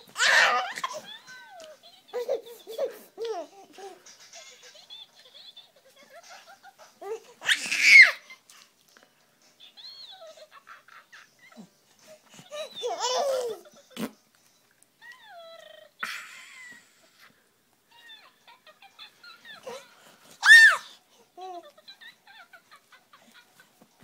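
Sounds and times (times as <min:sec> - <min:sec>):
baby cooing: 0:00.1 - 0:01.2
baby squealing and babbling: 0:00.2 - 0:01.2, 0:07.0 - 0:08.2, 0:12.5 - 0:13.6, 0:20.4 - 0:20.9.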